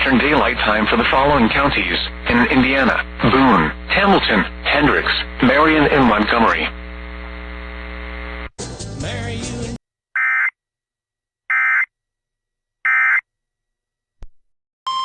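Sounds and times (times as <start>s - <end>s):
broadcast music: 8.6s - 9.8s.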